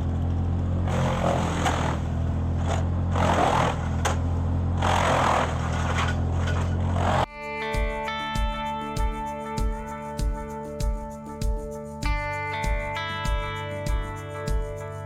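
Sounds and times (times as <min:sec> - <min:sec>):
wood chipper chipping: 0:00.0 - 0:07.3
sharp crack: 0:00.8 - 0:07.3.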